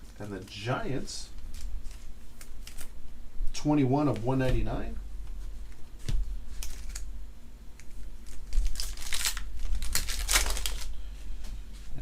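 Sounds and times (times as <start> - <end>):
cards and packaging crinkling: 1.4 - 3.0, 6.5 - 7.1, 7.8 - 10.9.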